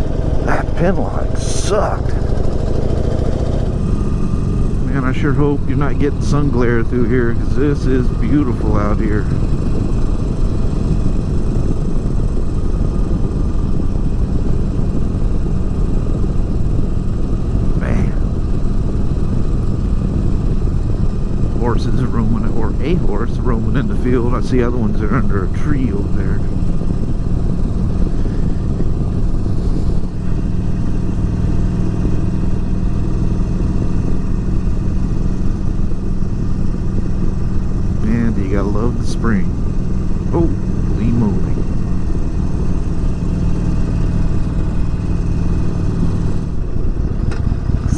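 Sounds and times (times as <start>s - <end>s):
motorcycle engine running: 0.0s - 47.9s
wind noise: 0.0s - 47.9s
wind rush: 26.3s - 32.3s, 45.8s - 47.9s.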